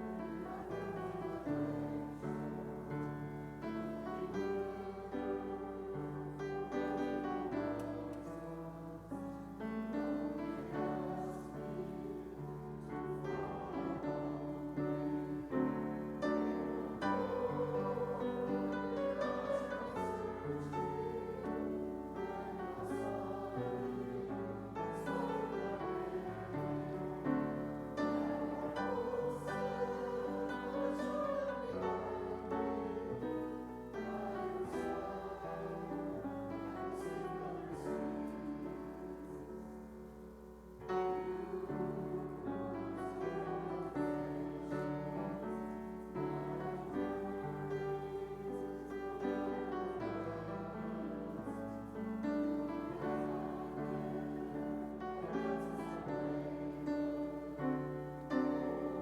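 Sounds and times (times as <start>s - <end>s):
slow piano piece: 0.0s - 59.0s.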